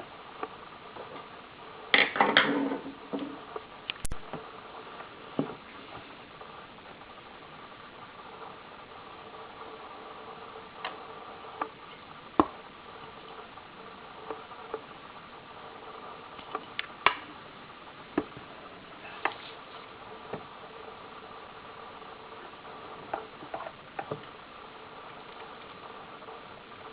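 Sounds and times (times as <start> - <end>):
faint hum: 0.0 - 26.9
steady hiss: 0.0 - 26.9
sharp clicks and pops: 3.5 - 5.1, 16.3 - 17.3.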